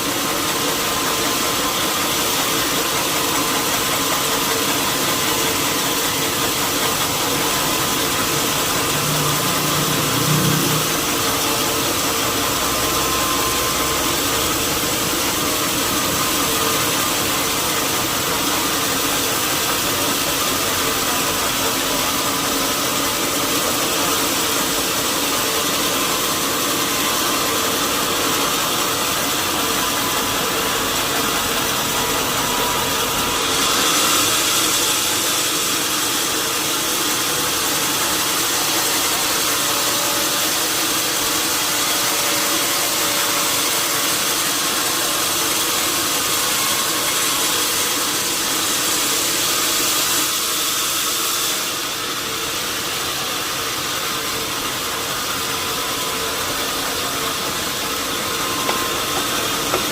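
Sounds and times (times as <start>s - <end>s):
sawmill machinery hiss: 0.0s - 59.9s
motor hum: 56.1s - 59.9s.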